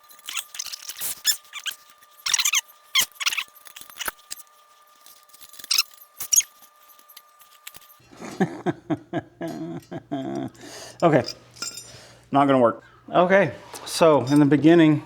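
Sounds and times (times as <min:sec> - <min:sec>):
metal clicks and clinks: 0:00.0 - 0:08.0, 0:11.0 - 0:11.9
metal parts squeaking and scraping: 0:00.0 - 0:08.1.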